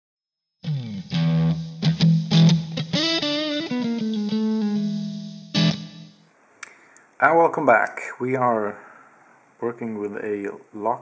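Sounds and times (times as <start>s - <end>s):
guitar plucking and strumming: 0.6s - 6.2s.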